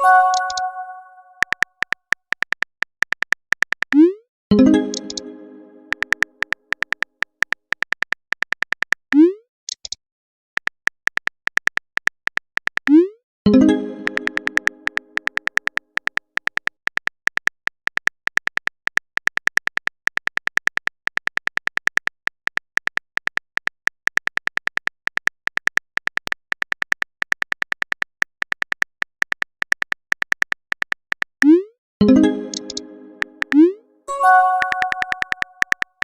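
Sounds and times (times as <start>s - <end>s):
phone keyboard key clicks: 34.5s - 36.0s.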